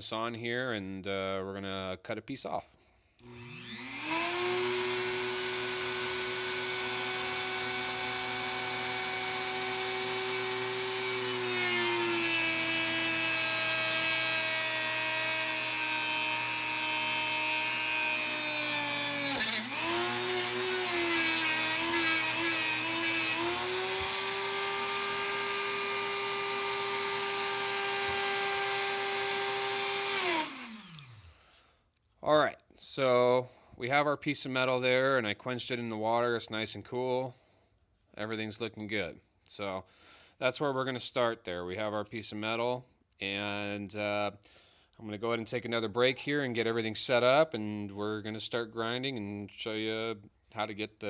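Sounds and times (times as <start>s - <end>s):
rotary tool whine: 3.2s - 31.4s.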